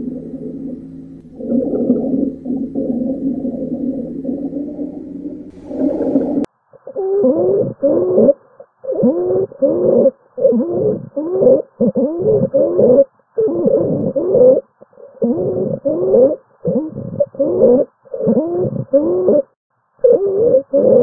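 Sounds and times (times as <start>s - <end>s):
steady pitched breath tone: 0.0s - 6.5s.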